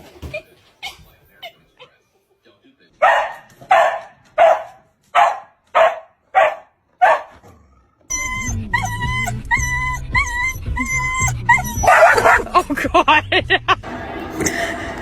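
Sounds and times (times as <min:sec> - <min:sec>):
dog barking: 0:03.0 - 0:07.4, 0:08.4 - 0:12.6.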